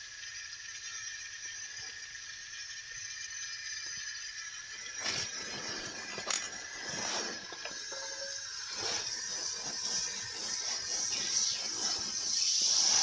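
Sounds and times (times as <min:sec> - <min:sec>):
utensil clicks and scrapes: 0:05.0 - 0:13.0
oil sizzling in a frying pan: 0:07.8 - 0:13.0.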